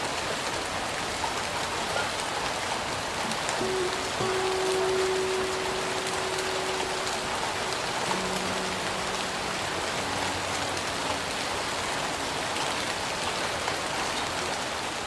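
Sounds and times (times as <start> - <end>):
hiss of water: 0.0 - 14.0
acoustic guitar notes: 3.5 - 12.2.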